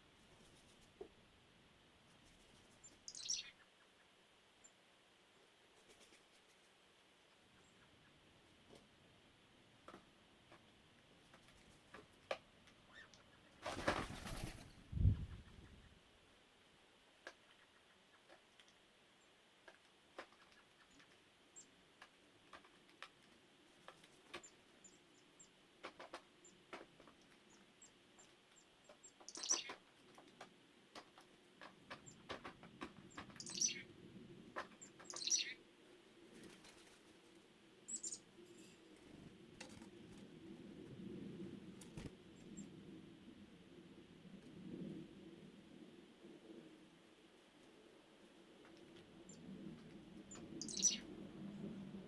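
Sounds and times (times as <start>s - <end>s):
downward sweeping bird calls: 50.5s - 51.1s
high short bird chirps: 50.6s - 51.0s.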